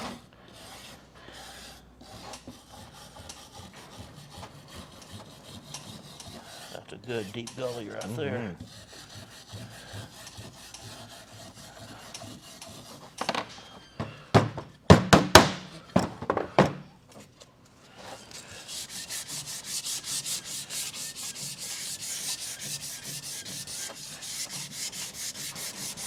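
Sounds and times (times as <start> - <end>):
sandpaper rubbing on wood: 0.0 - 13.2, 18.0 - 26.0
wooden knocks: 13.2 - 16.9.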